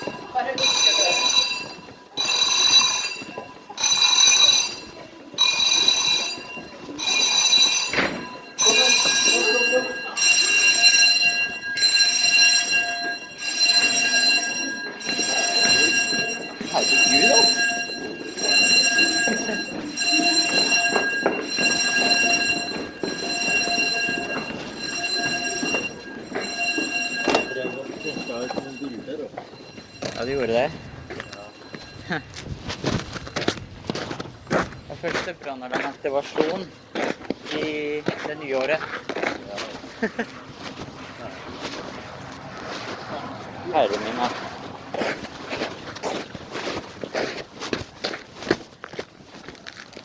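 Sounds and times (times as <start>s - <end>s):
electric fire alarm bells ringing: 0.0s - 34.2s.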